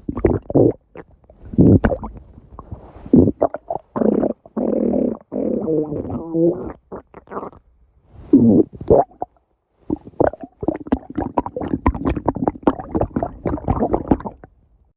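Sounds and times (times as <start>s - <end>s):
stomach growling and gurgling: 0.0s - 7.6s, 8.2s - 14.6s.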